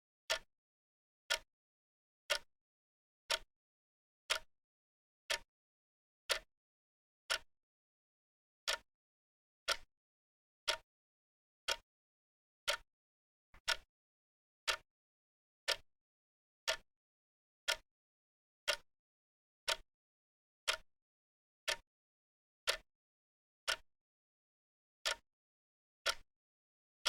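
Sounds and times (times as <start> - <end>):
wrist watch ticking: 2.3 - 2.5, 12.7 - 12.9, 20.7 - 20.9, 22.7 - 22.9, 23.7 - 23.9.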